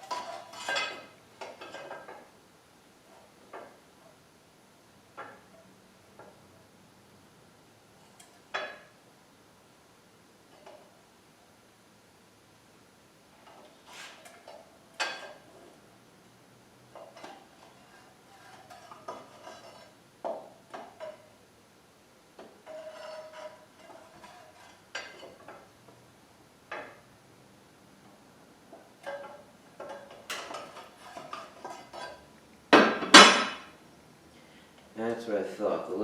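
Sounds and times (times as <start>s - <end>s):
loud metal clanks: 32.8s - 33.7s.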